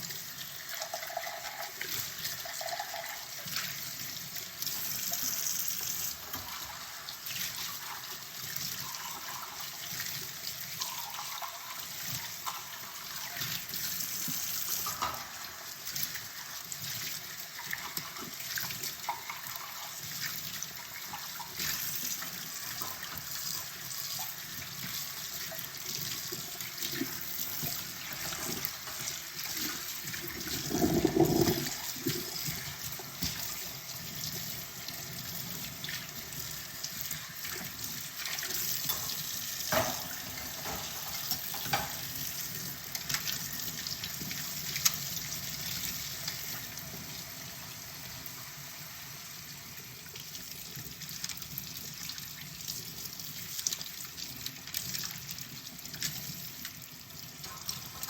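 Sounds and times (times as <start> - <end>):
dishes clattering: 30.2 - 32.4
tap running into sink: 30.2 - 32.6
dishes clinking: 30.3 - 32.3.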